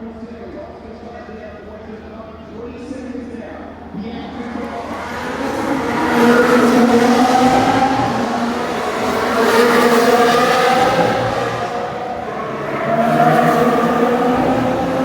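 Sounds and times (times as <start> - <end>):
racing car engine: 2.3 - 15.0.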